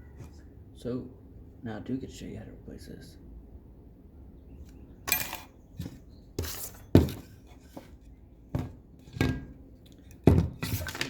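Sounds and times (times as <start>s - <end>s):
metal tools clanking on table: 5.1s - 7.2s.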